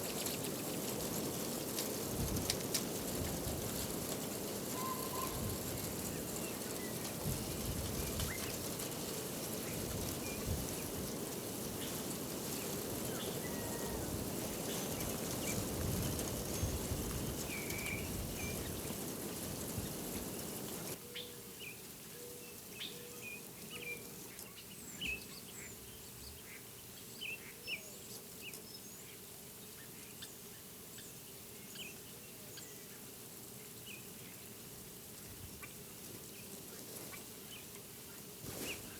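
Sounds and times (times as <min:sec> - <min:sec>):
songbird chirps: 0:11.8 - 0:34.6.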